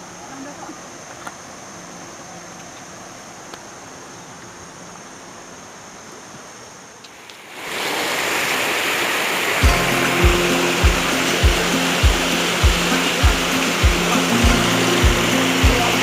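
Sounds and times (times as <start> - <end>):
waterfall rushing water: 7.1 - 16.0.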